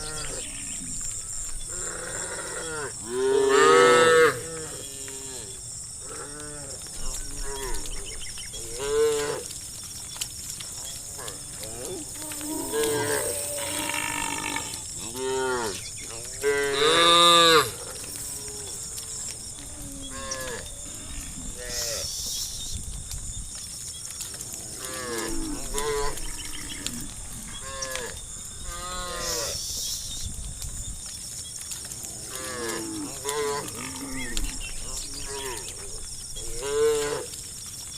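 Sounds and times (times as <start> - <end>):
cattle mooing: 11.2 - 19.3.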